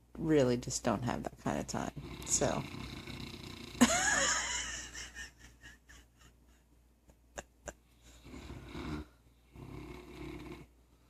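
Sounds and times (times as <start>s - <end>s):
dog snoring: 1.7s - 3.9s, 8.0s - 10.8s.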